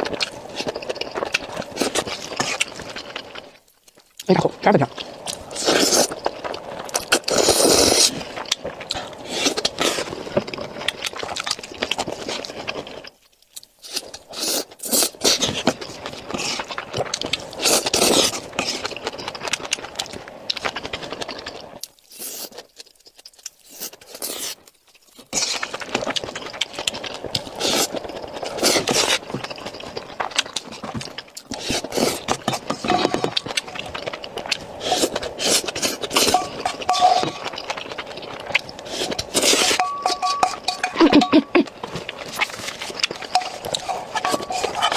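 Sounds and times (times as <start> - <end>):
wet chewing and slurping: 0.0 - 44.9
utensil scraping bowl: 31.5 - 44.9.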